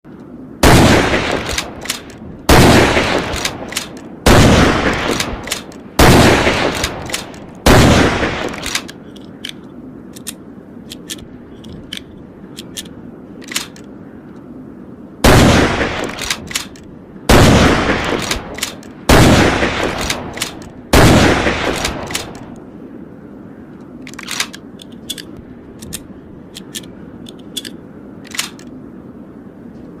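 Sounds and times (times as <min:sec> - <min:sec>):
rifle shots: 0:00.6 - 0:08.9, 0:15.2 - 0:22.6
sharp clicks: 0:01.2 - 0:02.2, 0:03.0 - 0:04.1, 0:04.8 - 0:07.6, 0:08.3 - 0:14.5, 0:15.9 - 0:16.9, 0:18.0 - 0:19.0, 0:19.7 - 0:20.8, 0:21.4 - 0:22.6, 0:23.8 - 0:28.8.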